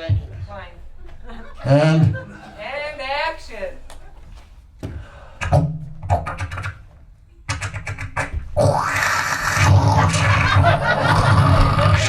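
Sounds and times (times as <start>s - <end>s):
mouth clicks: 5.4s - 6.9s, 7.5s - 12.0s
mouth hissing: 8.6s - 12.0s.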